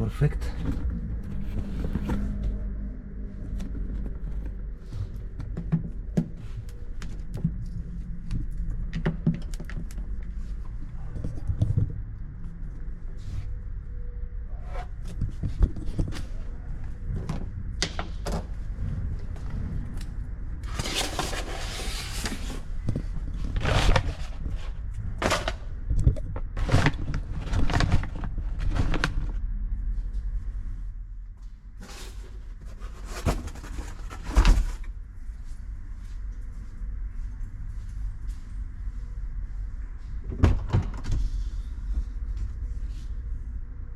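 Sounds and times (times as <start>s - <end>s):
steady low hum: 0.0s - 43.9s
scraping noises: 20.6s - 25.6s, 31.8s - 34.9s.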